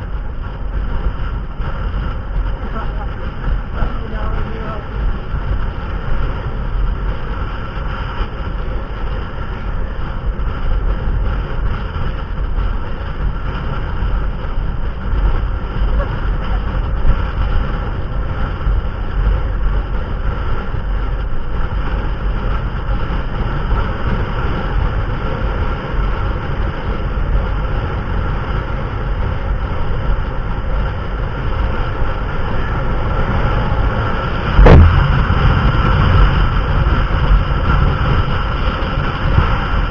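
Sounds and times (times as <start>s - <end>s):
vehicle engine rumbling: 0.0s - 39.9s
sudden thump: 34.5s - 36.3s.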